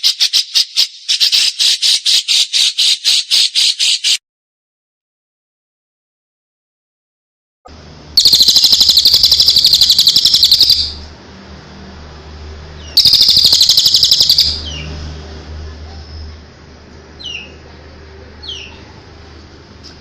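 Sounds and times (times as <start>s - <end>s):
songbird trilling: 0.0s - 4.2s, 8.2s - 11.0s, 12.8s - 14.9s, 17.2s - 17.6s
low steady hum: 7.7s - 20.0s.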